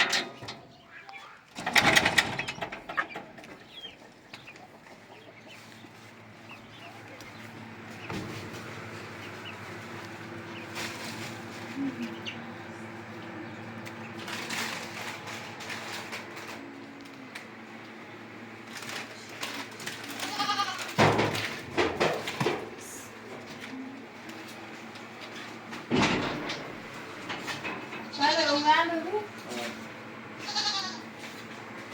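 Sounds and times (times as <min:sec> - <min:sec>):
animal bleating: 0:20.0 - 0:21.0, 0:28.0 - 0:29.0, 0:30.4 - 0:31.2.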